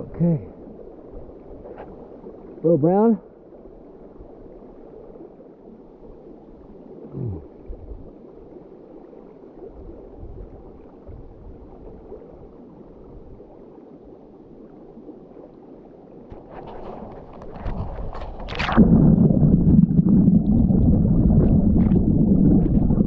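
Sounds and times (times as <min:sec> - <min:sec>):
flowing river water: 0:00.0 - 0:23.0
water splashing: 0:16.2 - 0:23.0
low rumbles: 0:16.4 - 0:23.0.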